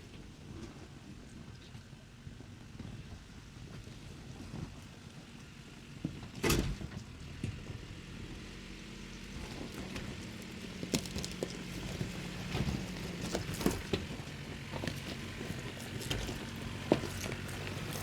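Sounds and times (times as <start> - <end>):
pickup engine hum: 7.0 - 18.0
truck knocks and thumps: 9.3 - 18.0.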